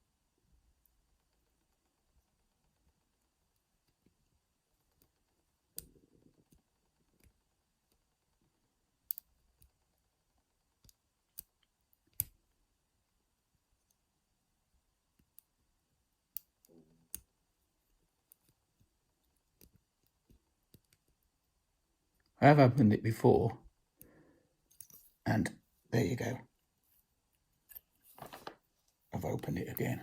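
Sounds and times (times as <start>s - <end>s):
handling rustles: 26.9s - 29.0s.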